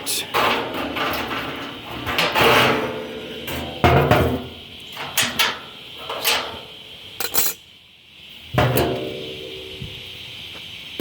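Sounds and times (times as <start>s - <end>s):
metal basket clanking: 0.0s - 6.6s, 7.2s - 7.6s.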